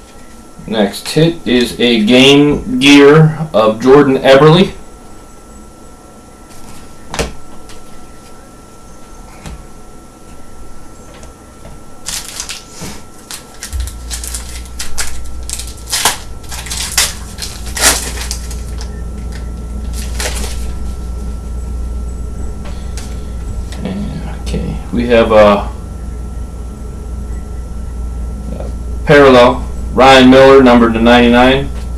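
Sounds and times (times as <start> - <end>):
low steady hum: 0.0 - 31.9
foil wrappers crinkling: 12.0 - 21.2.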